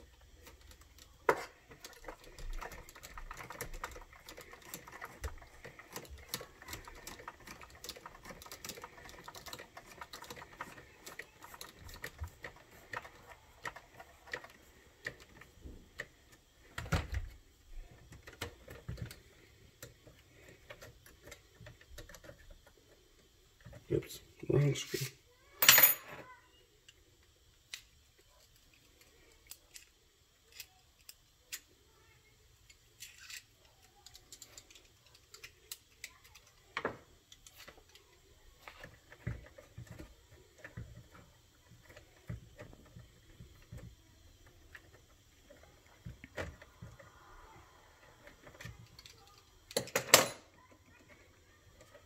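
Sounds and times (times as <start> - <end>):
small parts clicking and tapping: 0.0 - 24.0, 25.6 - 52.0.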